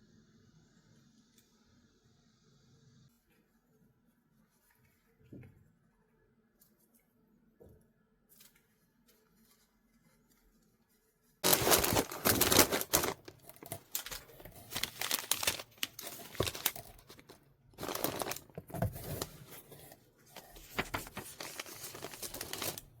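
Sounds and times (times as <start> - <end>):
crinkly packaging rustling: 11.3 - 23.0.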